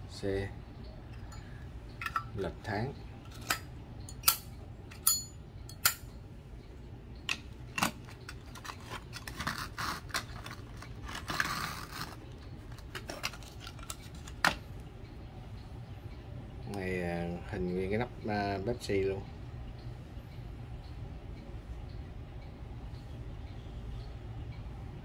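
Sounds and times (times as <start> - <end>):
metal lighters clicking and clinking: 3.4 - 6.2.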